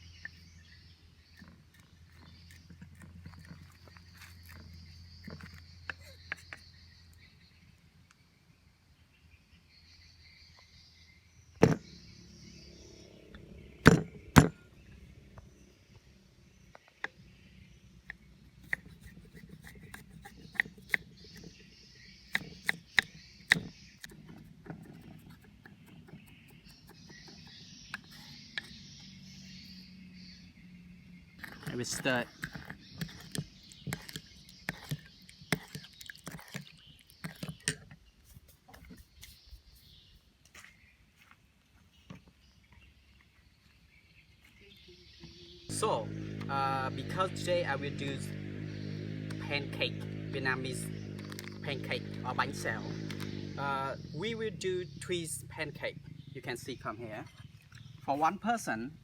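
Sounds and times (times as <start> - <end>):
insects chirring: 0.0 - 8.2, 9.7 - 40.0
sharp knocks and clicks: 13.4 - 14.7, 22.3 - 28.9, 31.4 - 38.0.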